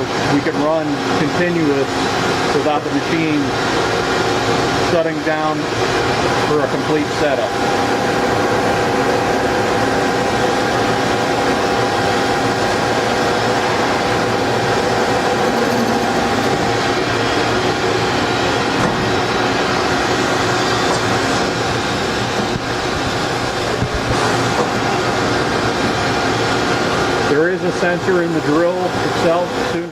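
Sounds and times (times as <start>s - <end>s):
machine drilling steel: 10.0s - 22.2s
held machine tones: 11.2s - 18.6s.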